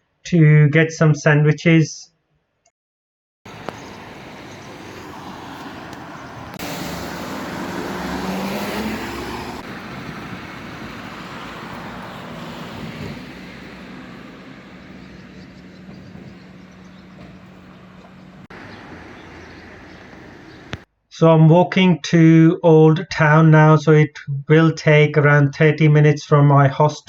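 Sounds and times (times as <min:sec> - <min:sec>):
steady engine hum: 0:03.5 - 0:20.8
vehicle accelerating past: 0:03.5 - 0:20.8.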